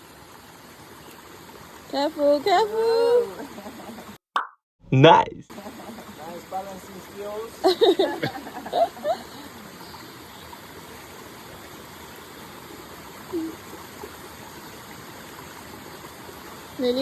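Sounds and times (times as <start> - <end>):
voices: 1.9 - 4.2, 4.9 - 10.1, 16.8 - 17.0
stream rushing over rocks: 5.5 - 17.0.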